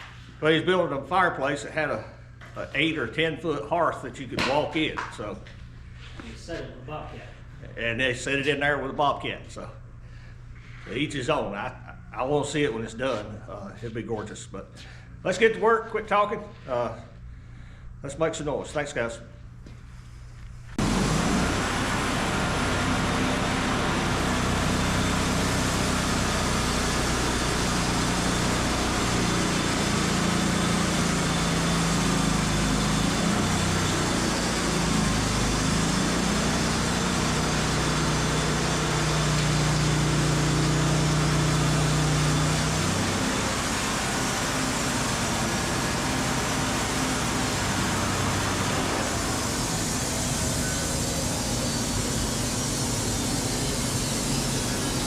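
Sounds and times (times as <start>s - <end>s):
sawmill engine drone: 20.8s - 55.0s
band blade hissing: 49.4s - 55.0s.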